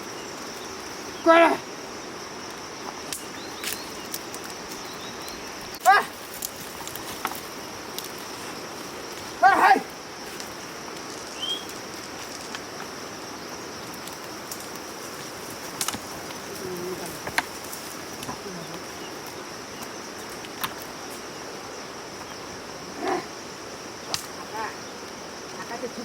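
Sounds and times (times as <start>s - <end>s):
steady high hiss: 0.0s - 26.0s
person shouting: 1.2s - 1.6s, 5.8s - 6.1s, 9.4s - 9.9s.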